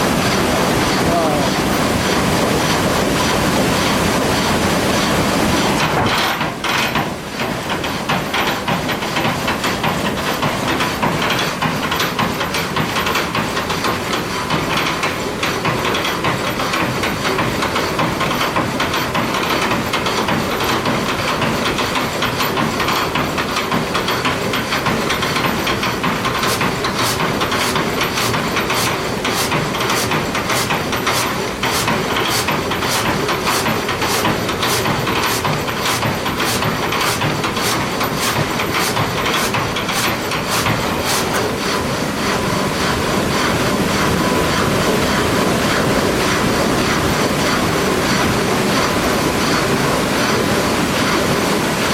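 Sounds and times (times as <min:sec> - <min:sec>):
rushing water: 0:00.0 - 0:07.8, 0:20.8 - 0:51.9
sash saw cutting a log: 0:00.2 - 0:06.4, 0:25.3 - 0:48.2
wooden gearing clattering: 0:18.2 - 0:42.9.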